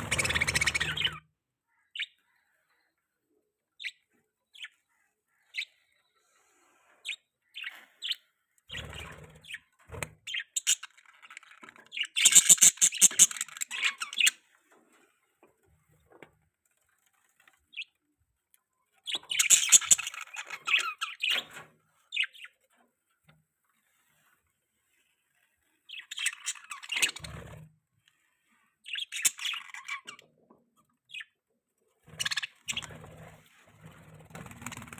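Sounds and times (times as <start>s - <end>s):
budgies chirping and chattering: 0.0s - 1.2s, 7.0s - 14.4s, 19.0s - 22.7s, 25.9s - 27.7s, 28.8s - 30.5s, 32.1s - 34.9s.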